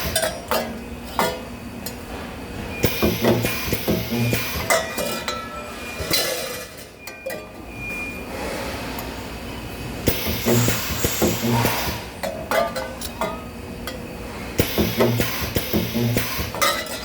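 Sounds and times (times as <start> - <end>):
spot welder humming: 2.8 - 4.8, 10.0 - 12.2, 14.6 - 16.7.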